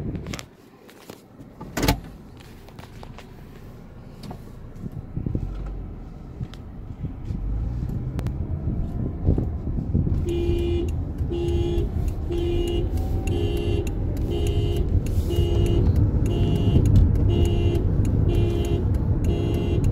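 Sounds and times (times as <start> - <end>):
car driving rumble: 0.0 - 19.9
car horn beeping: 10.1 - 19.9.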